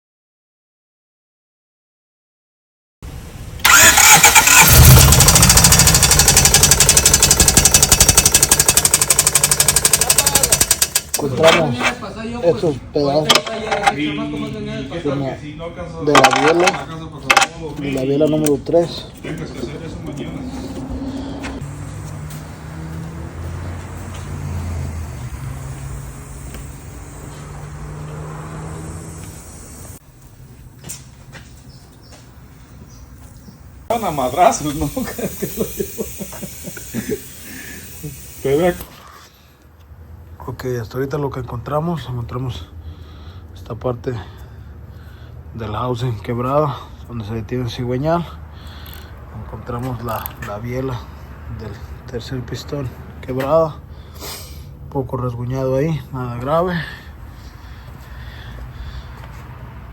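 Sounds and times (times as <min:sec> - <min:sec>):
engine knocking: 0:03.7 - 0:11.2
car engine running: 0:04.7 - 0:11.2, 0:20.4 - 0:30.0
car engine humming: 0:19.0 - 0:38.5.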